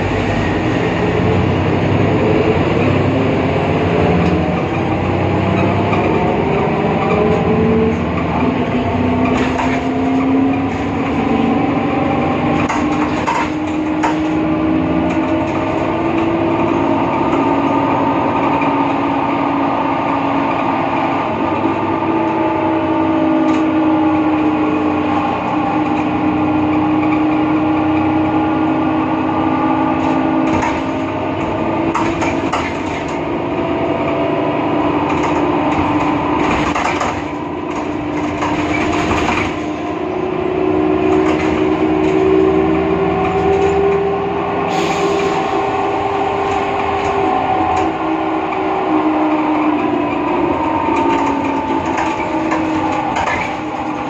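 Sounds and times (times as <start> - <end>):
bus drivetrain whine: 0.0 - 54.0
engine and road rumble: 0.0 - 54.0
rattles and knocks: 4.0 - 11.4, 12.4 - 17.5, 30.0 - 33.3, 35.0 - 40.1, 40.9 - 44.2, 50.8 - 54.0.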